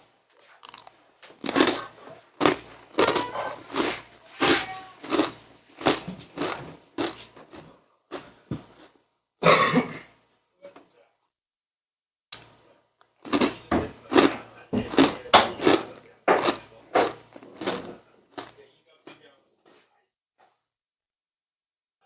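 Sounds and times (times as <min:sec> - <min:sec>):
chewing crunchy food: 0:00.4 - 0:09.0, 0:12.4 - 0:18.6.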